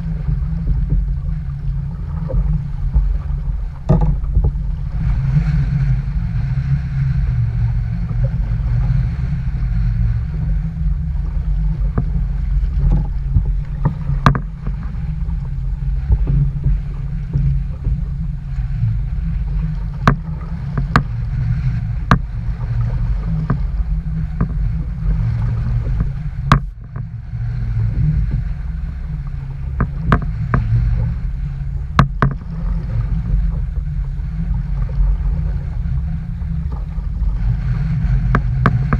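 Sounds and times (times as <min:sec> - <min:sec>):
wind buffeting microphone: 0:00.0 - 0:38.9
sharp knocks and ticks: 0:03.9 - 0:04.6, 0:12.8 - 0:14.8, 0:20.0 - 0:21.1, 0:22.0 - 0:22.3, 0:25.9 - 0:27.1, 0:29.8 - 0:30.7, 0:32.0 - 0:32.4.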